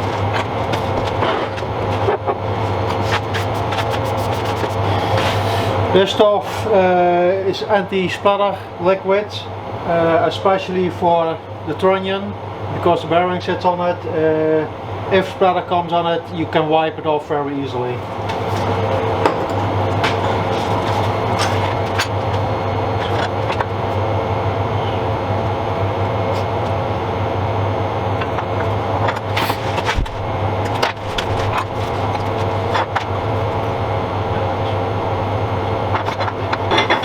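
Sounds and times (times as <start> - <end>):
low hum: 18.0 - 37.0.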